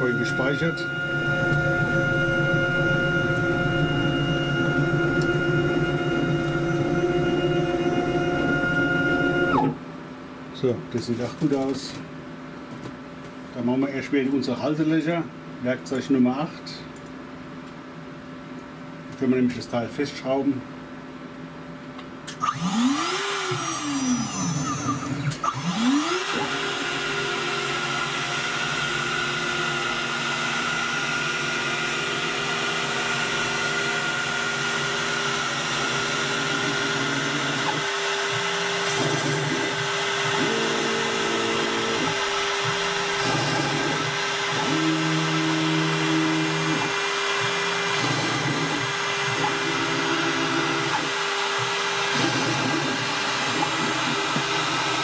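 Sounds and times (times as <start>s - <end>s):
router spindle whining: 0.0s - 9.8s, 22.3s - 55.0s
stepper motor tones: 0.0s - 9.8s, 22.3s - 55.0s.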